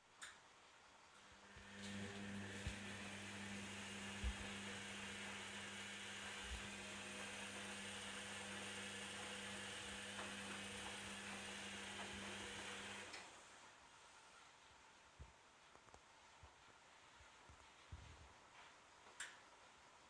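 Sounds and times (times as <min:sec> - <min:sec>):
electrical hum: 0:01.4 - 0:13.2
water rushing into washing machine: 0:01.6 - 0:13.3.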